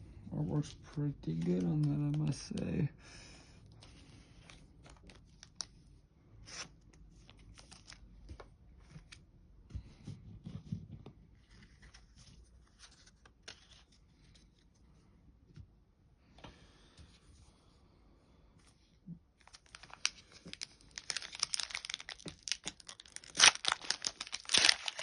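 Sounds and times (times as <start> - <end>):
foil pack tearing and crinkling: 19.5 - 25.0.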